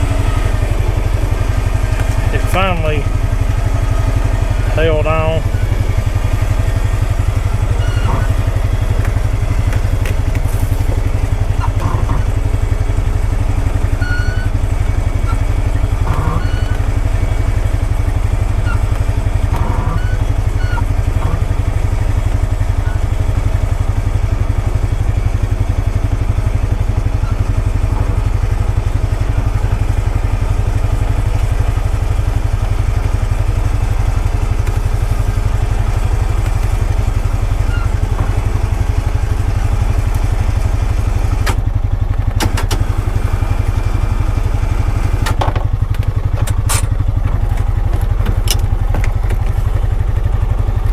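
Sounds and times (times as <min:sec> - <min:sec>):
vehicle engine running: 0:00.0 - 0:50.9
knocks and clatters: 0:45.2 - 0:50.0.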